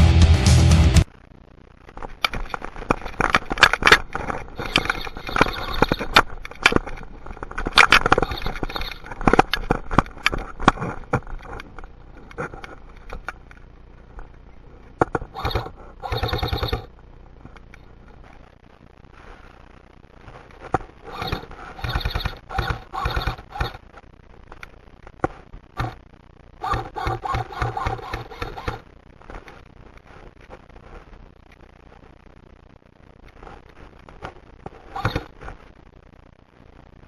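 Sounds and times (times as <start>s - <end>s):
airsoft rifle rapid bursts: 15.4s - 16.9s, 21.2s - 23.8s, 26.6s - 28.8s
airsoft gunfire: 26.6s - 28.8s.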